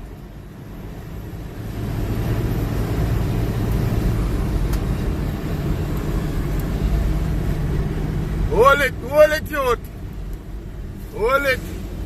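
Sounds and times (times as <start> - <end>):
engine revving: 1.4 - 9.0.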